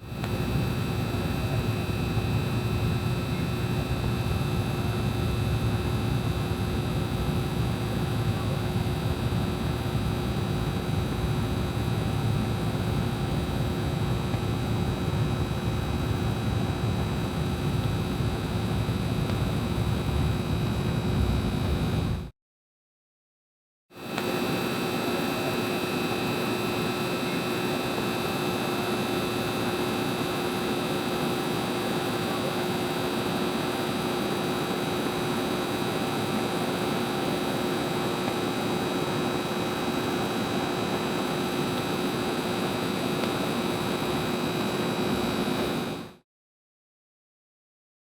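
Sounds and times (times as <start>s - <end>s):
neon sign buzzing: 0.1s - 22.3s.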